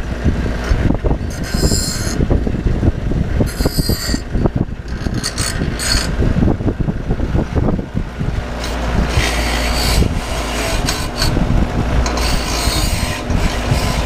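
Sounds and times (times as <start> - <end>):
grinder grinding steel: 0.0 - 2.3, 3.4 - 6.2, 8.4 - 14.0.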